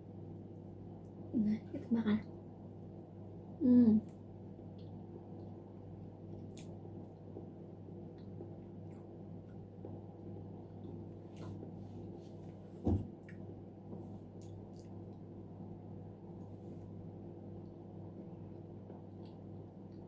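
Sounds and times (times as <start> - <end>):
wet chewing and mouth clicks: 6.3 - 7.5, 14.3 - 15.3.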